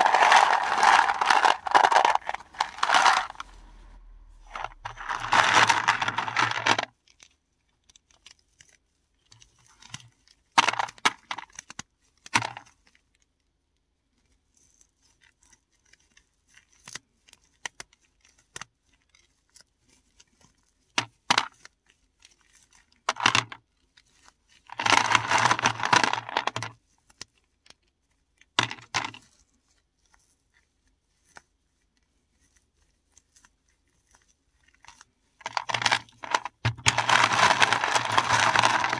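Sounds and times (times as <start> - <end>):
mothball tablets crunching: 0.0 - 6.8, 35.5 - 38.9.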